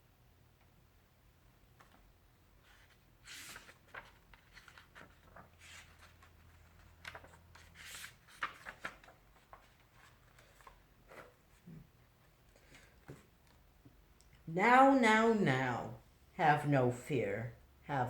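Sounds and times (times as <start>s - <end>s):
book pages rustling: 1.8s - 13.7s.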